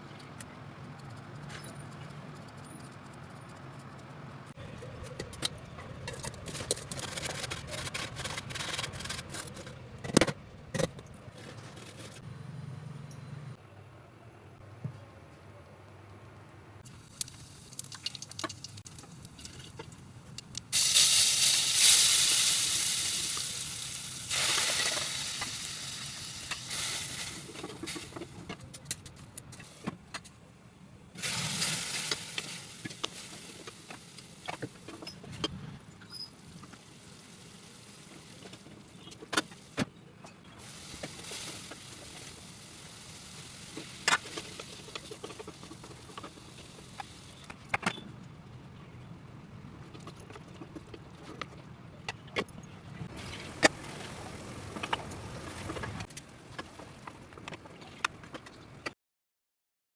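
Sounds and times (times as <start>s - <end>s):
food sizzling in hot oil: 20.7s - 28.2s, 31.2s - 34.6s, 36.3s - 38.7s, 40.6s - 45.0s.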